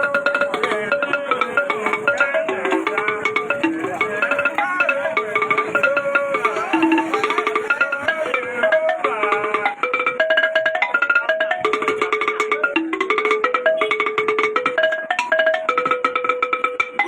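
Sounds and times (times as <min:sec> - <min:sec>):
fast repeating pitched notes: 0:00.0 - 0:17.0.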